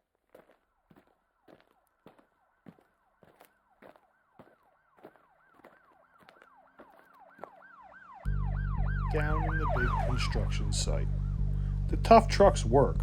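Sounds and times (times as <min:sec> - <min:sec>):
siren-like warble: 0:04.4 - 0:11.5.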